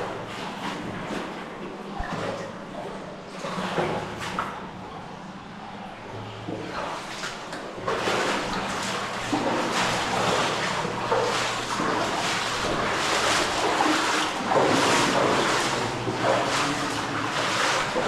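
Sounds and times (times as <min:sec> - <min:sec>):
water splashing and rushing: 0:06.5 - 0:18.0.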